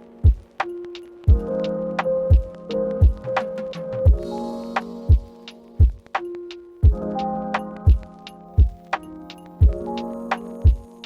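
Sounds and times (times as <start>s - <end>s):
deep thudding beat: 0.2s - 7.2s, 7.8s - 9.0s, 9.6s - 9.9s.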